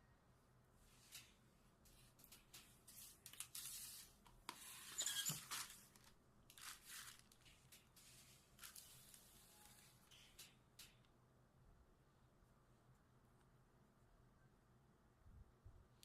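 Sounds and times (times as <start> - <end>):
plastic wrapping rustling and tearing: 1.0 - 10.9.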